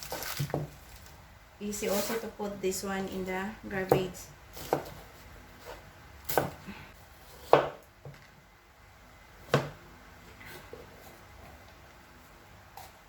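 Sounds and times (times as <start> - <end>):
knife chopping on cutting board: 3.9 - 6.6, 7.3 - 7.8, 9.4 - 9.8.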